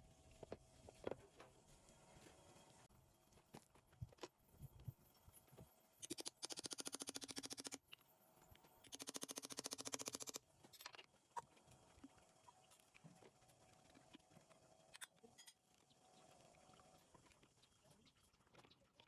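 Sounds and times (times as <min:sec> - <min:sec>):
metal parts clicking and knocking: 0:06.0 - 0:07.9.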